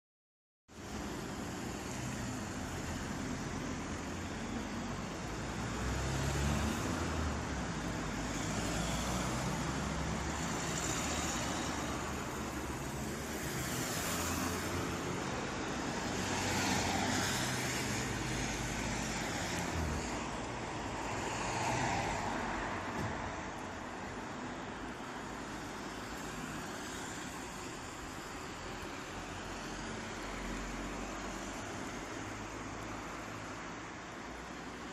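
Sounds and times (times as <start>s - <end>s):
road traffic rumble: 0.7s - 34.9s
vehicles passing: 0.8s - 34.9s.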